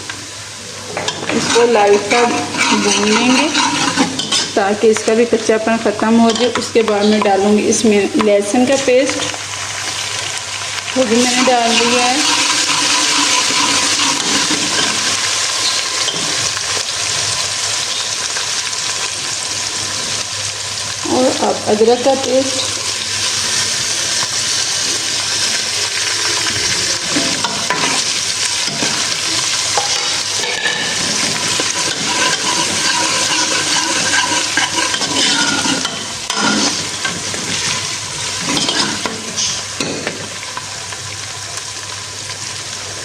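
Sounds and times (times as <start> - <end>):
paste sizzling in oil: 0.0 - 42.6
spoon scraping pan: 0.9 - 5.2, 6.0 - 7.5, 11.1 - 16.5, 26.4 - 40.0.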